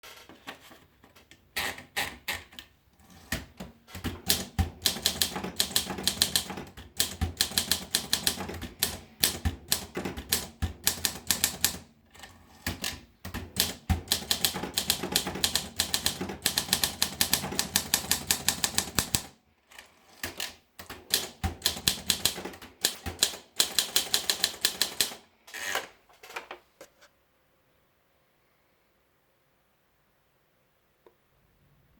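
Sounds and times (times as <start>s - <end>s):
typewriter key strikes: 4.0s - 11.8s, 20.3s - 25.2s.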